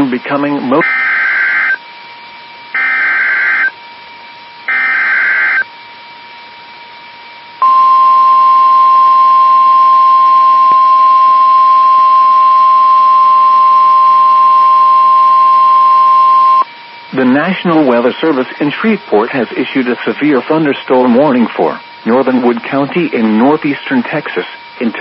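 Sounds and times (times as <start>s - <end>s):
buzzy data bursts: 0.0s - 1.8s, 2.7s - 3.8s, 4.7s - 5.7s
steady alert tone: 4.7s - 5.6s.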